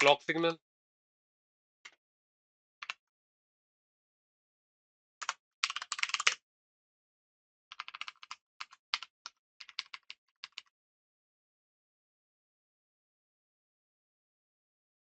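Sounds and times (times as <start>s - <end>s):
computer keyboard typing: 5.2s - 6.4s, 7.7s - 10.7s.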